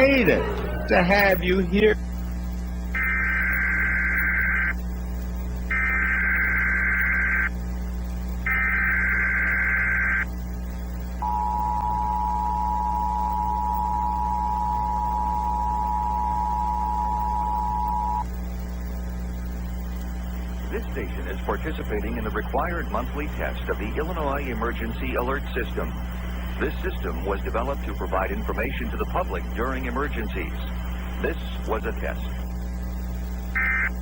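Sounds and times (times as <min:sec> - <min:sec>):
buzzing digital data tones: 0:00.0 - 0:34.0
two-tone attention signal: 0:11.2 - 0:18.2.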